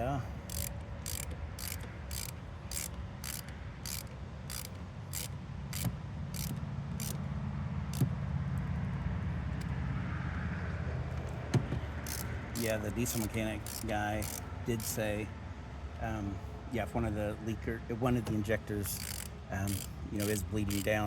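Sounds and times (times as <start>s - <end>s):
ratchet wrench clicking: 0.0s - 7.3s, 12.0s - 15.2s, 18.8s - 21.0s.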